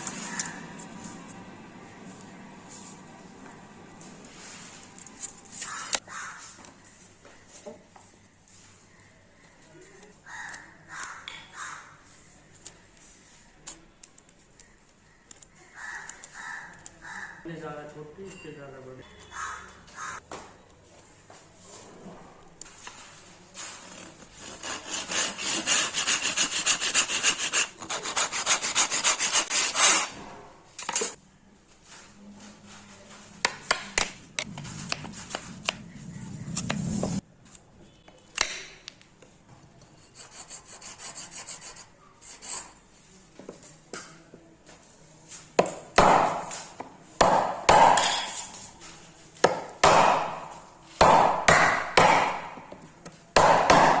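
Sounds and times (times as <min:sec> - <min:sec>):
hand saw cutting wood: 0:23.9 - 0:30.3.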